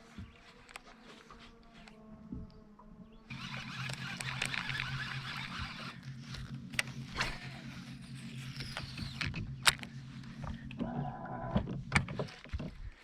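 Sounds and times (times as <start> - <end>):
steady low hum: 0.0 - 12.1
mechanical creaking: 2.8 - 12.8
sharp clicks: 3.3 - 6.0.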